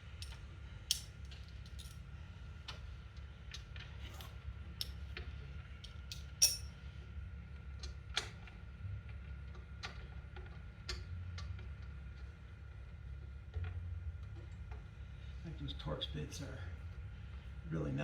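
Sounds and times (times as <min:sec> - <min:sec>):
steady low hum: 0:00.0 - 0:18.0
hand tools clinking on bolts: 0:05.8 - 0:06.7
ringing metal clink: 0:06.4 - 0:06.7.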